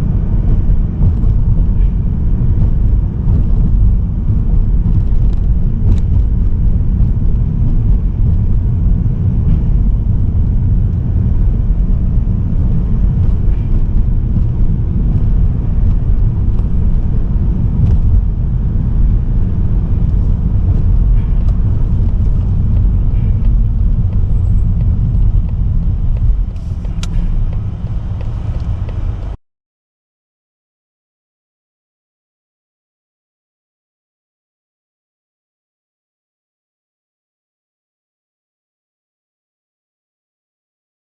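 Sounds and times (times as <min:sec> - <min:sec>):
car driving rumble: 0:00.0 - 0:29.4.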